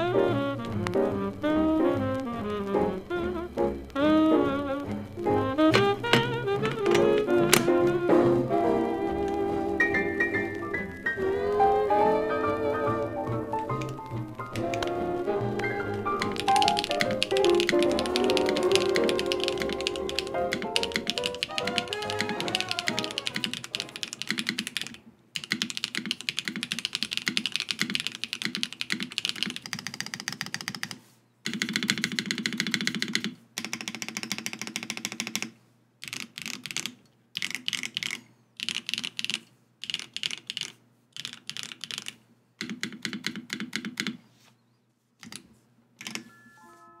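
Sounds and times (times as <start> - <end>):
mechanical keyboard typing clacks: 13.7 - 44.2, 45.2 - 45.4, 46.0 - 46.3.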